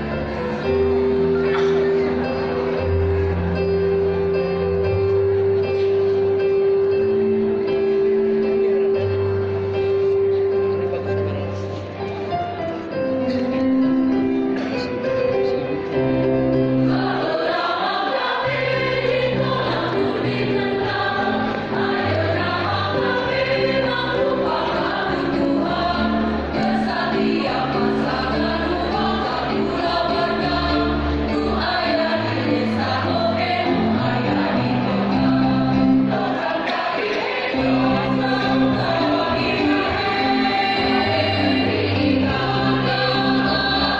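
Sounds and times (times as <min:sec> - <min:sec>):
choir singing: 0:16.6 - 0:43.9.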